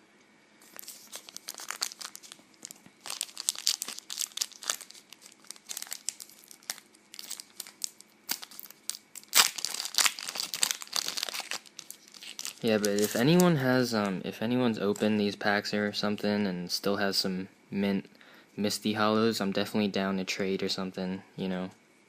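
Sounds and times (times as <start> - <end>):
foil wrapper crinkling and tearing: 0.6 - 13.6.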